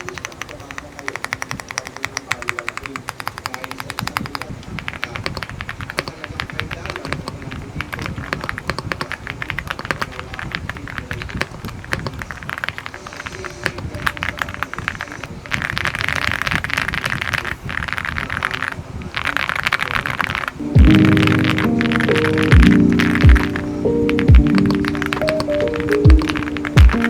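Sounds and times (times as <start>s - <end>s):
mechanical keyboard key clacks: 0.0s - 27.0s.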